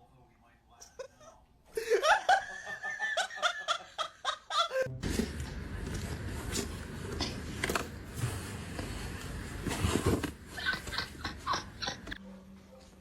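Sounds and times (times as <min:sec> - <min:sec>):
person laughing: 0:01.0 - 0:05.0, 0:10.6 - 0:12.2.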